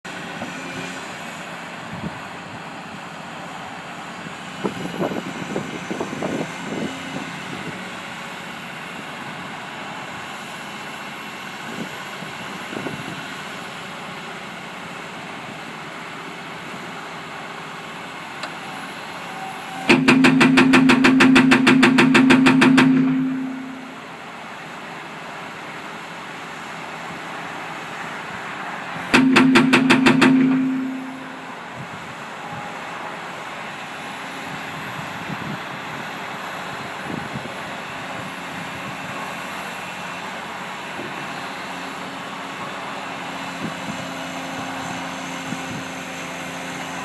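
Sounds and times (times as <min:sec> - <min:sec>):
diesel engine running: 0:00.0 - 0:47.0
hydraulic hammer blows: 0:18.4 - 0:24.3, 0:29.0 - 0:34.5
metal clanks: 0:19.9 - 0:24.0, 0:29.1 - 0:31.5.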